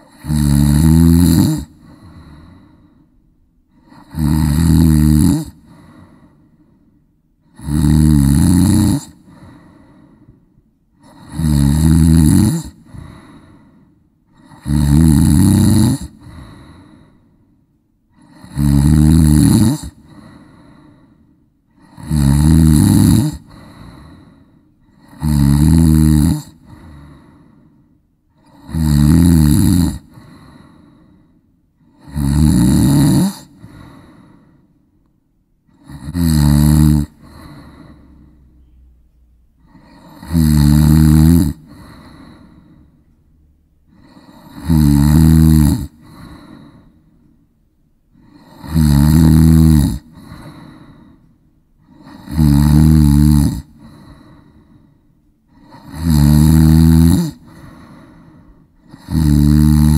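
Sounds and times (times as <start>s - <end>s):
loud snoring: 0.0s - 2.7s, 3.7s - 6.3s, 7.4s - 10.2s, 11.0s - 13.7s, 14.3s - 17.1s, 18.1s - 21.0s, 21.7s - 27.5s, 28.4s - 31.0s, 31.8s - 34.4s, 35.7s - 38.8s, 39.6s - 43.0s, 43.9s - 47.0s, 48.2s - 51.1s, 51.8s - 54.6s, 55.5s - 59.9s.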